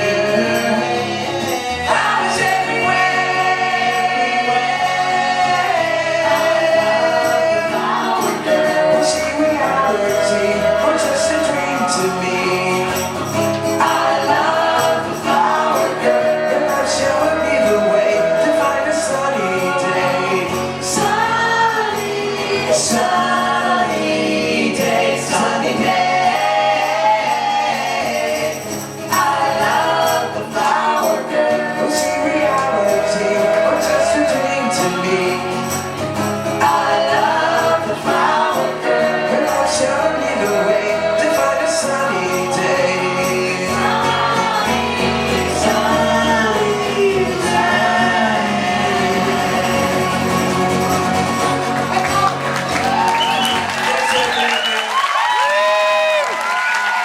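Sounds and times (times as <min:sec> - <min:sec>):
live pop band playing: 0:00.0 - 0:56.6
voices singing in harmony: 0:00.0 - 0:57.0.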